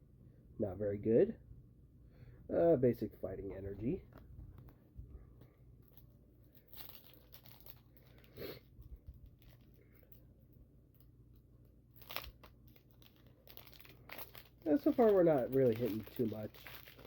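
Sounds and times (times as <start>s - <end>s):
foil pack and cards rustling: 5.8s - 10.4s, 11.9s - 17.0s.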